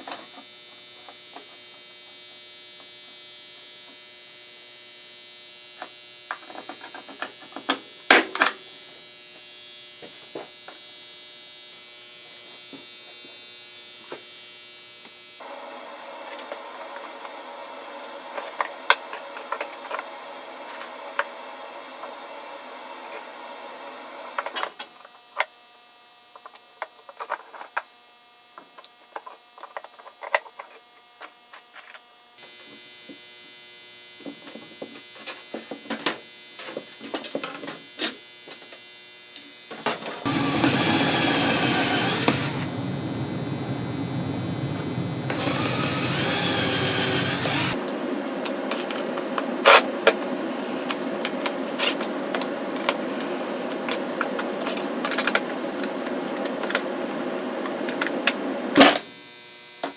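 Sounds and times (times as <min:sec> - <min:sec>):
power tool running loudly: 0:15.4 - 0:24.8, 0:40.3 - 0:58.8
steady hum: 0:40.3 - 0:58.8.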